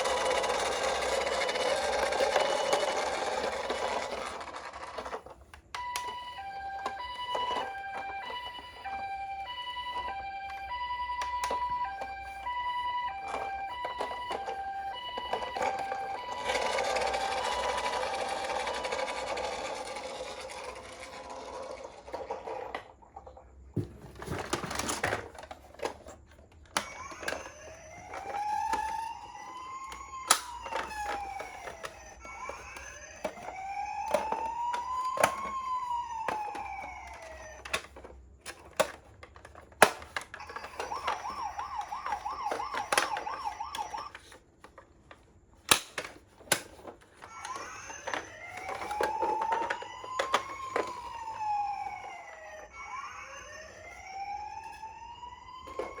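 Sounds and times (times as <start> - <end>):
toy siren wailing: 0.0 - 5.2, 5.8 - 23.4, 26.7 - 44.4, 45.7 - 56.0
plastic toy clicks and knocks: 0.0 - 6.2, 13.1 - 23.3, 24.2 - 52.0.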